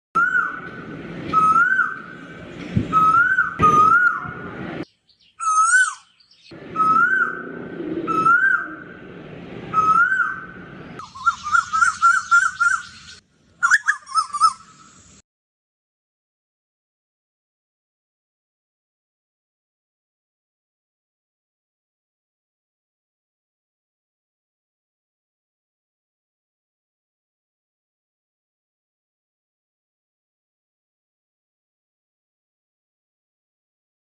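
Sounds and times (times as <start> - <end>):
bird whistling song: 0.2 - 9.0, 9.6 - 15.2.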